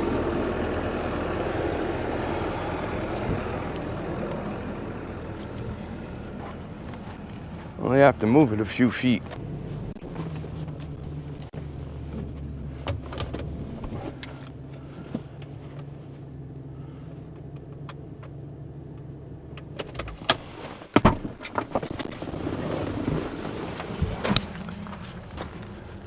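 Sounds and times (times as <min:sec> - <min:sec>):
vehicle engine idling: 0:00.0 - 0:26.0
sharp clunks and clicks: 0:09.2 - 0:15.9, 0:17.3 - 0:22.4.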